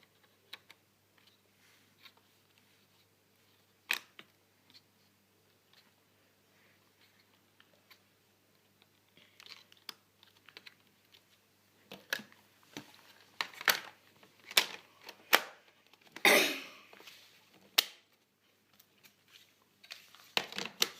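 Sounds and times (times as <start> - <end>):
plastic laptop parts clicking: 3.8 - 4.8, 8.6 - 11.3, 11.9 - 16.2, 19.8 - 20.9.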